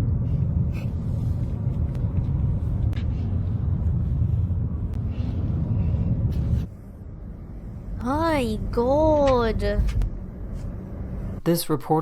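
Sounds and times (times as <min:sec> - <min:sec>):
vehicle driving rumble: 0:00.0 - 0:11.4.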